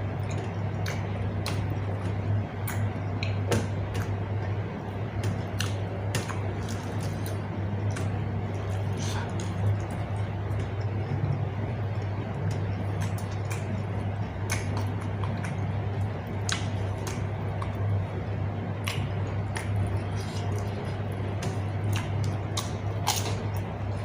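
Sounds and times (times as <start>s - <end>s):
steady low hum: 0.0s - 24.0s
wet chewing and mouth smacks: 12.0s - 18.0s, 18.8s - 24.0s.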